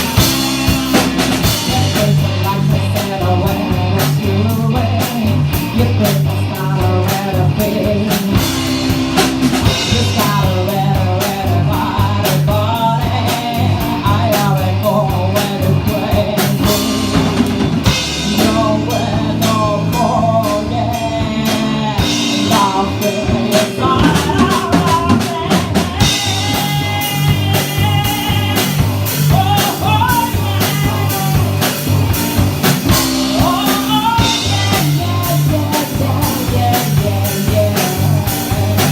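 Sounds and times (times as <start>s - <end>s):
band playing bluesy rock: 0.0s - 38.9s
drum kit: 0.0s - 38.9s
electric guitar: 0.0s - 38.9s
person singing: 0.0s - 38.9s.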